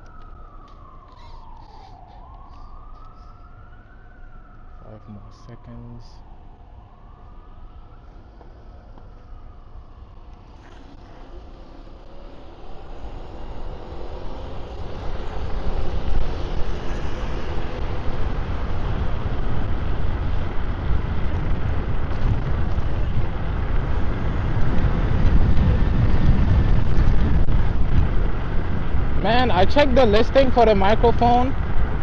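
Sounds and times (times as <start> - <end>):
road rumble: 0.0 - 32.0
wind buffeting microphone: 12.0 - 32.0.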